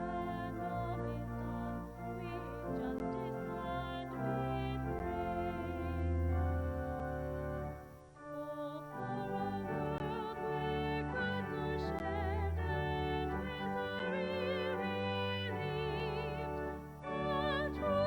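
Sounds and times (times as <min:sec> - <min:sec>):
person singing with vibrato: 0:00.0 - 0:06.7, 0:08.2 - 0:18.0
sustained church chords: 0:00.0 - 0:18.0.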